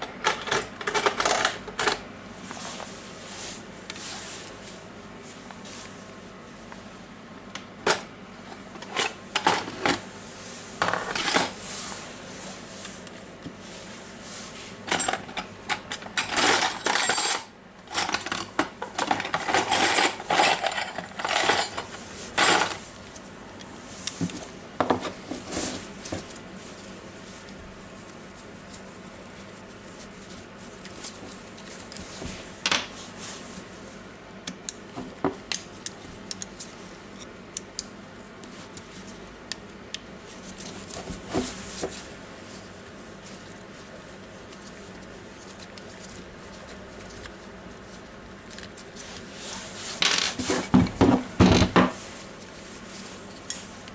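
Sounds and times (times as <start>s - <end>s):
metal parts clattering on bench: 14.9s - 22.8s, 50.0s - 50.7s.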